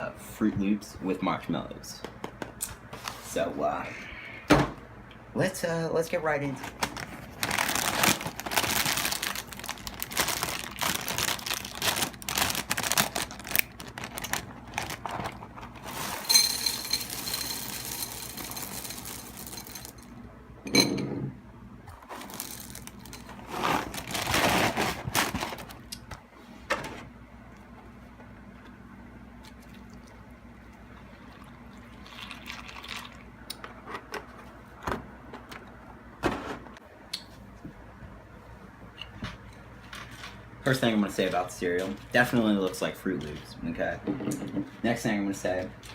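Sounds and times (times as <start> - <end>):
packaging crinkling: 6.6 - 20.0, 22.0 - 26.0
cereal pouring into a bowl: 15.8 - 20.0, 22.1 - 24.8.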